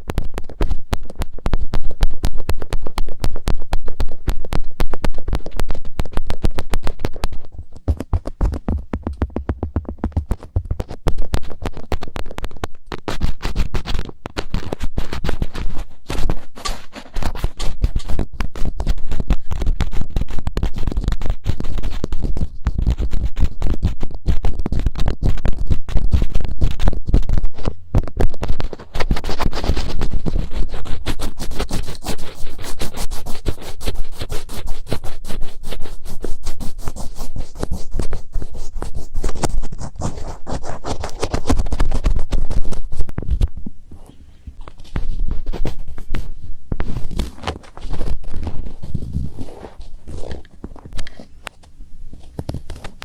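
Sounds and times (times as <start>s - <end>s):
fingertips scratching microphone: 0.0s - 53.0s.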